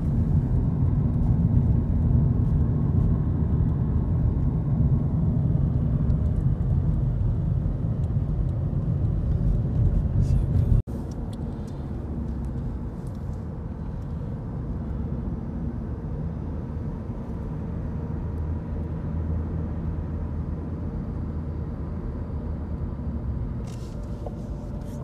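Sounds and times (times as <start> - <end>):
car interior road rumble: 0.0 - 25.0.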